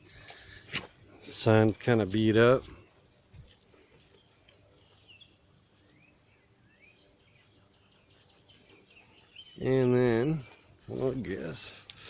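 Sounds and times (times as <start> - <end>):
insect chirring: 0.0 - 12.0
bird chirps: 4.1 - 9.9.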